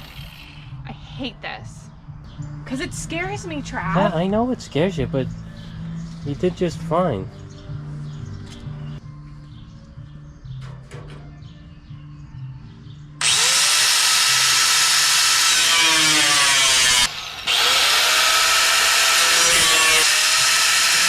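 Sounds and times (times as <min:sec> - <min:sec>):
power tool cutting sheet steel: 0:13.2 - 0:21.0.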